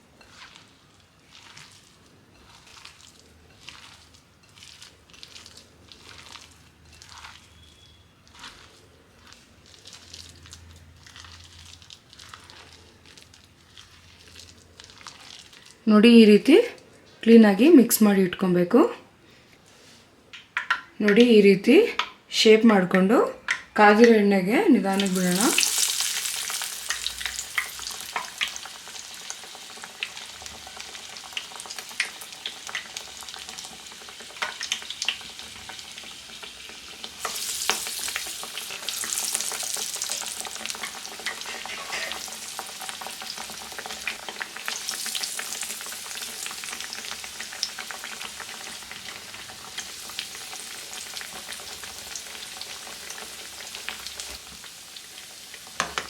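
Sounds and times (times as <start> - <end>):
oil crackles and pops: 0.0 - 15.8, 24.9 - 56.0
fritters deep-frying in oil: 0.0 - 18.0, 20.6 - 56.0.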